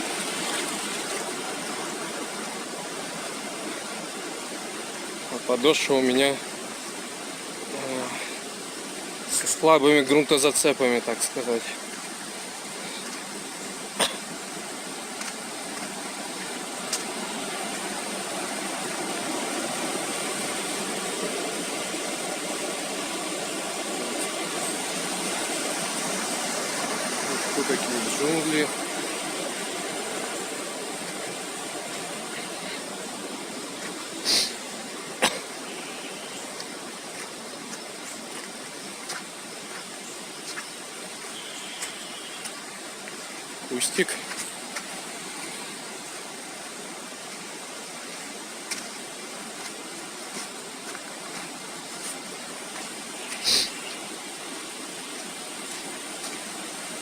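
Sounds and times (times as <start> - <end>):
river flowing over rocks: 0.0 - 57.0
waterfall rushing: 0.0 - 57.0
faint footsteps on stones: 15.1 - 17.2, 33.8 - 34.1, 36.5 - 43.2, 44.1 - 45.7, 48.6 - 53.4.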